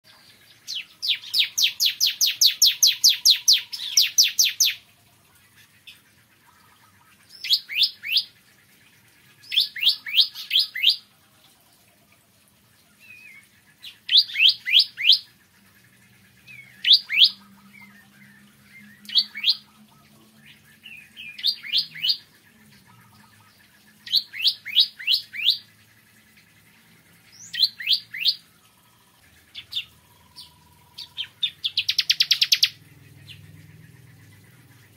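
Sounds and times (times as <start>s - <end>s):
bird singing high chirps: 0.1s - 4.8s, 9.4s - 11.1s, 13.0s - 15.3s, 16.4s - 25.7s, 27.3s - 34.2s.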